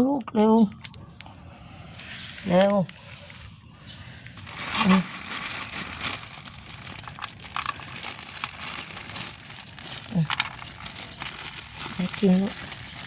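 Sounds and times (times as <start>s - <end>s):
plastic packaging crinkling: 4.2s - 13.0s.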